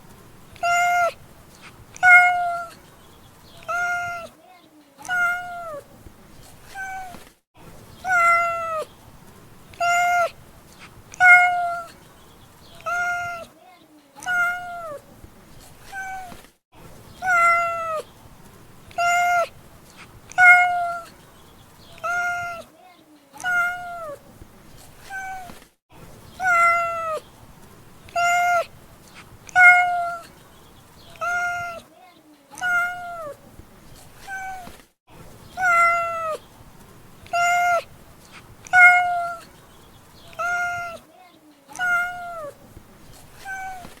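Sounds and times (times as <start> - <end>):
cat meowing: 0.6 - 1.1, 2.0 - 2.8, 3.6 - 4.3, 5.0 - 5.9, 6.7 - 7.2, 8.0 - 8.9, 9.8 - 10.3, 11.1 - 12.0, 12.8 - 13.5, 14.2 - 15.1, 15.9 - 16.4, 17.2 - 18.0, 18.9 - 19.5, 20.3 - 21.2, 22.0 - 22.7, 23.4 - 24.2, 25.0 - 25.5, 26.4 - 27.2, 28.1 - 28.7, 29.5 - 30.3, 31.1 - 31.9, 32.5 - 33.4, 34.2 - 34.7, 35.6 - 36.4, 37.2 - 37.9, 38.6 - 39.5, 40.3 - 41.0, 41.7 - 42.6, 43.3 - 44.0.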